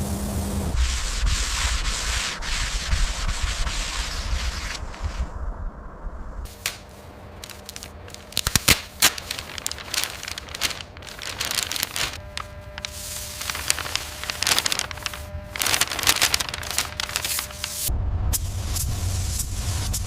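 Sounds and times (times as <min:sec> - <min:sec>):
crackling: 0:06.4 - 0:17.9.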